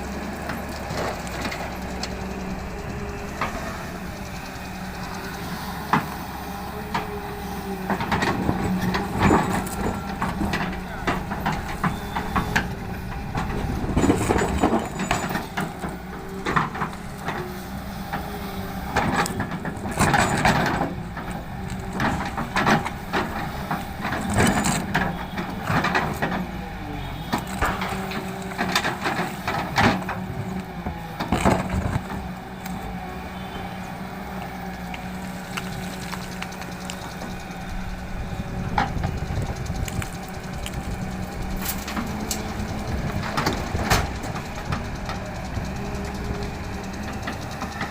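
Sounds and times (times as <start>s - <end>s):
excavator diesel engine running: 0.0s - 47.9s
stones crunching and clattering: 27.3s - 30.1s, 31.2s - 32.8s, 34.9s - 37.3s, 38.8s - 43.6s.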